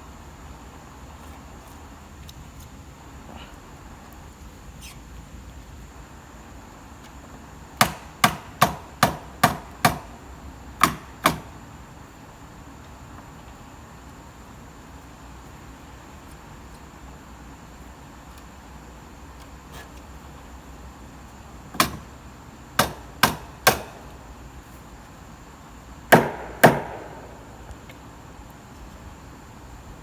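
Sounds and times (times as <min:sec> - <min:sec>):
hammer striking wood: 0:07.8 - 0:10.1, 0:10.8 - 0:11.5, 0:21.8 - 0:22.0, 0:22.8 - 0:24.1, 0:26.1 - 0:27.7.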